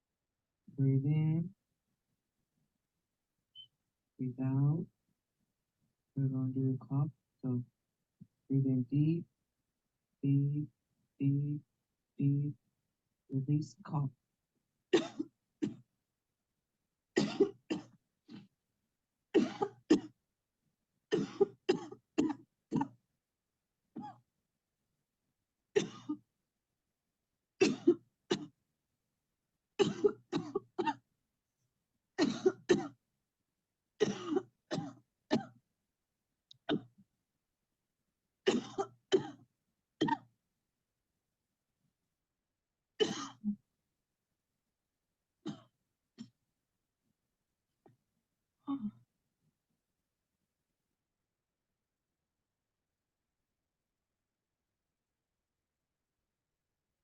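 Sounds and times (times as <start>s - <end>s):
person coughing: 15.0s - 15.8s, 17.2s - 17.9s, 19.4s - 20.1s, 21.2s - 22.9s, 25.8s - 26.2s, 27.6s - 28.5s, 29.8s - 31.0s, 32.2s - 33.0s, 34.0s - 35.6s, 38.5s - 39.4s, 43.0s - 43.6s.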